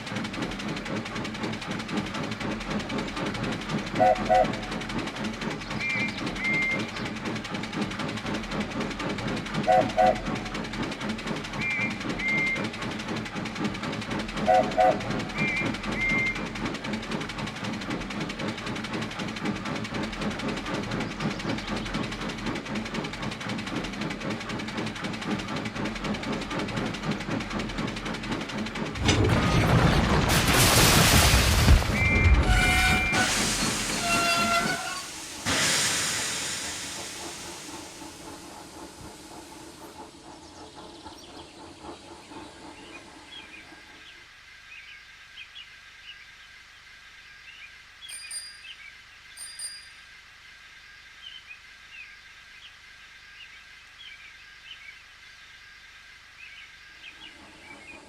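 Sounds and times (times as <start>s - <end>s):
model steam locomotive chuffing: 0.0s - 29.4s, 31.9s - 45.6s, 56.2s - 58.0s
faint birdsong: 0.7s - 28.5s, 36.6s - 58.0s
steam hiss: 32.4s - 43.1s.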